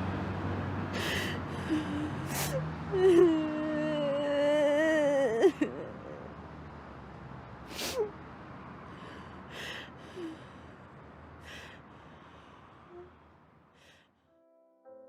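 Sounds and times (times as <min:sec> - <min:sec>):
person sniffing: 0:01.0 - 0:02.6, 0:07.7 - 0:08.1.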